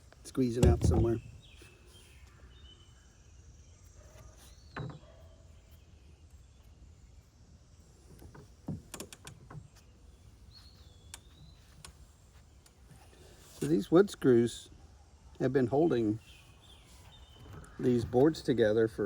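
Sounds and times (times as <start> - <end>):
bird chirping: 0.0 - 7.3, 8.0 - 19.0
soft knocks and clicks: 0.6 - 1.3.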